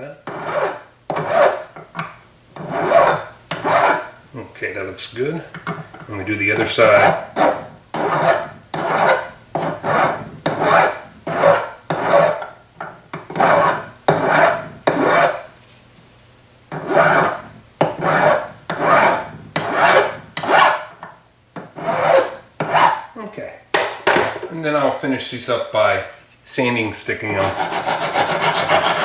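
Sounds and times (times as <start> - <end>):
hand file rasping on metal: 0.2 - 4.1, 5.6 - 15.5, 16.7 - 23.1, 27.3 - 29.0.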